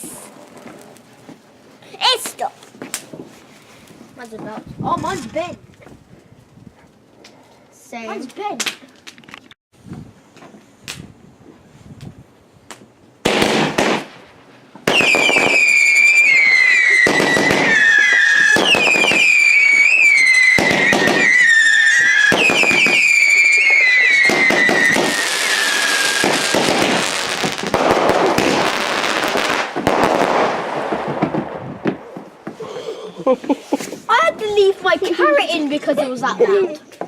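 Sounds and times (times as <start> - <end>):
firework whistles: 14.9 - 29.7
firework hissing crackle: 14.9 - 31.8.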